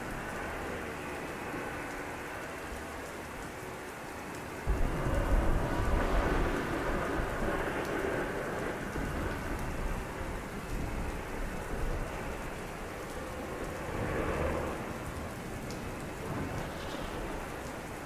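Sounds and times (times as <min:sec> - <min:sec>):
heavy rain falling: 0:00.0 - 0:18.0
thunder rolling: 0:04.7 - 0:11.2.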